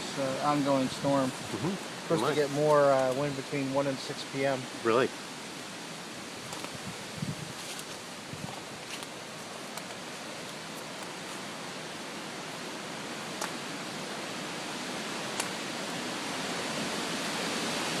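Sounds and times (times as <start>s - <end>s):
wind blowing through trees: 0.0s - 18.0s.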